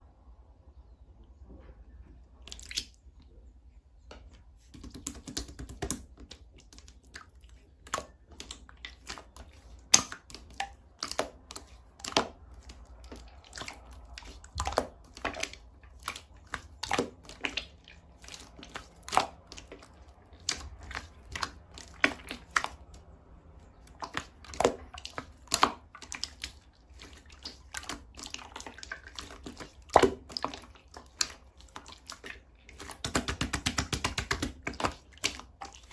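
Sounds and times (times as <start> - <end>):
slime clicking and popping: 7.8 - 19.8, 23.9 - 35.6.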